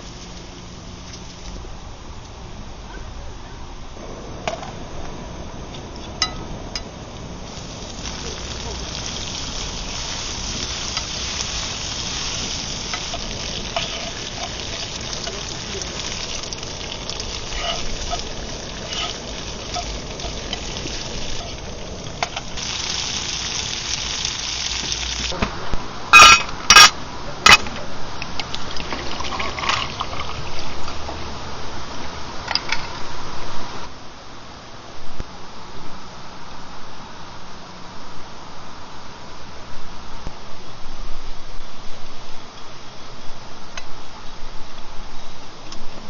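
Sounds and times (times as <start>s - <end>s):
food sizzling in a pan: 7.4s - 25.4s.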